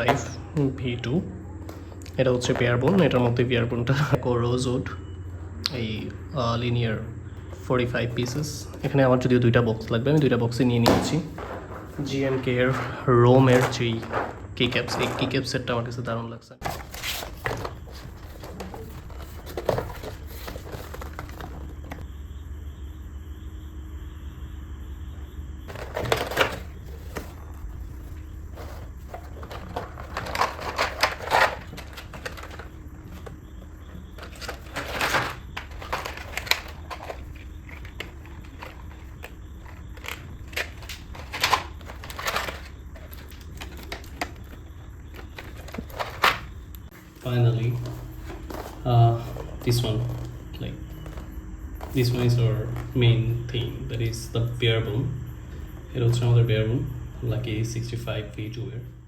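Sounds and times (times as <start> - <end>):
steady low hum: 0.0 - 59.0
boxes knocking: 10.5 - 15.6, 16.6 - 22.0, 25.6 - 46.7
wrapping rustling and crinkling: 16.6 - 22.0, 25.7 - 53.0.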